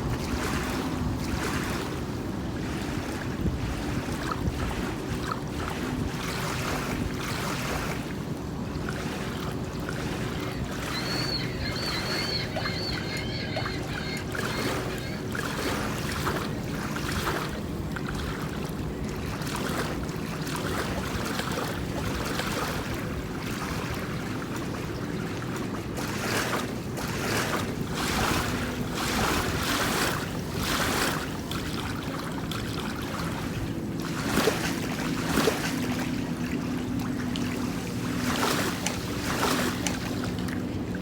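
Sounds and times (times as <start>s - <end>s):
wind on microphone: 0.0s - 8.3s, 27.2s - 33.6s
boat engine running: 0.0s - 41.0s
rushing water: 0.0s - 41.0s
high-pitched wavering tone: 10.7s - 15.4s.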